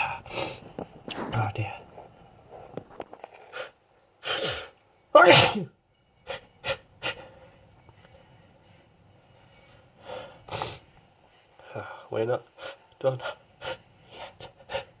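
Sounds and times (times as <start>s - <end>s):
person sneezing: 5.2s - 5.7s.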